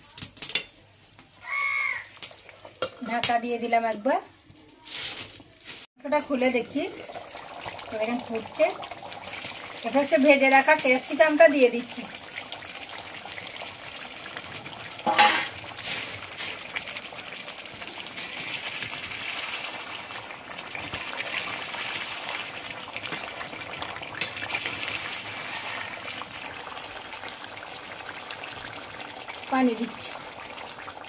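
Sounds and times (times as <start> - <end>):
curry bubbling and sizzling in pan: 0.5 - 5.4, 6.0 - 31.0
sharp knock from pan: 15.0 - 15.6.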